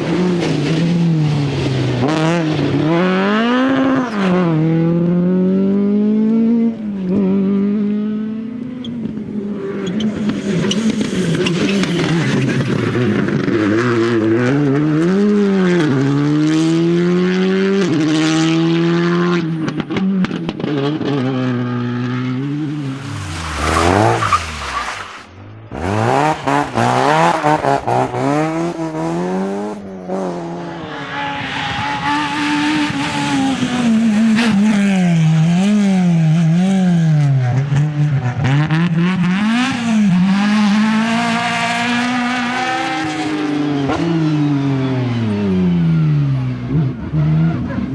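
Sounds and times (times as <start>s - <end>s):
rally car engines revving: 0.0s - 47.9s
car passing by: 18.2s - 38.3s.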